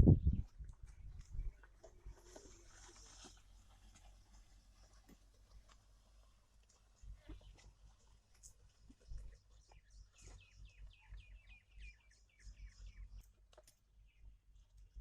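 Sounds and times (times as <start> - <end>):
bird chirping: 6.9 - 13.4.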